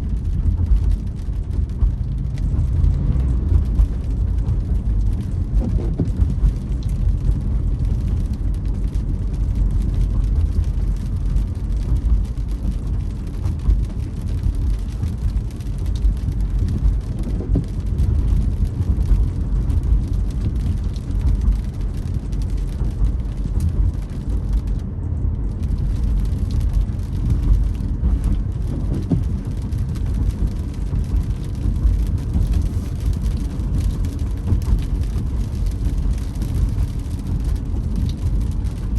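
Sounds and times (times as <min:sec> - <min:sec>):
car road and engine rumble: 0:00.0 - 0:38.9
rain hiss: 0:25.4 - 0:38.9.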